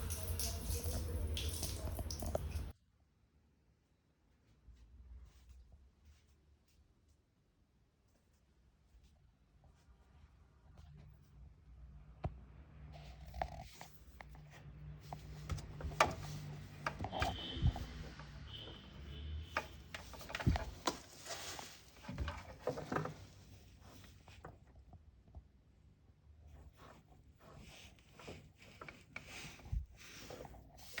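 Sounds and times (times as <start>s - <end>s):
clicks and knocks of handling: 19.5s - 23.4s.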